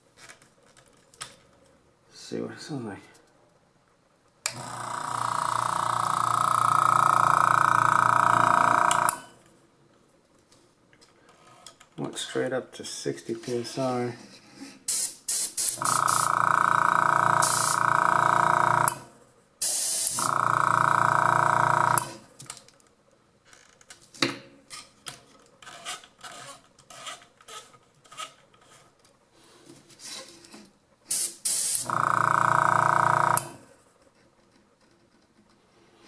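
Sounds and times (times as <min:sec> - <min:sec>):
airbrush compressor humming: 0:04.5 - 0:09.3, 0:15.6 - 0:22.2, 0:31.1 - 0:33.6
air hissing: 0:14.9 - 0:16.4, 0:17.3 - 0:17.9, 0:19.6 - 0:20.4, 0:31.1 - 0:32.0.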